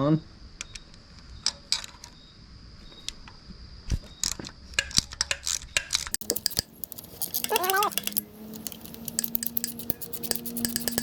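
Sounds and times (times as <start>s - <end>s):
metallic tool clicks and clinks: 4.2s - 11.0s.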